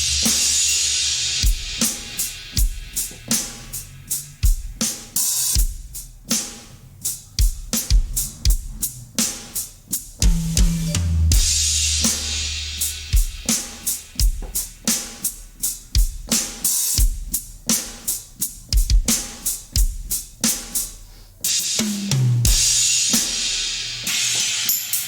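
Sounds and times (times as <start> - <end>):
crash cymbal ringing: 0.0 - 2.6, 10.6 - 14.1, 22.5 - 25.0
drum kit groove: 0.0 - 25.0.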